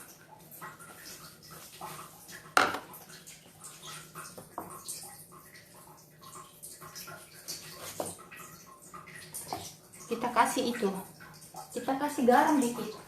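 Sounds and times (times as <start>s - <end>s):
dishes and utensils clattering: 2.5s - 3.0s.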